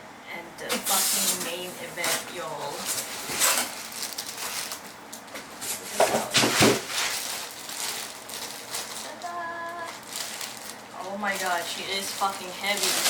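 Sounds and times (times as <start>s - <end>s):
packaging rustling and crinkling: 0.7s - 13.0s.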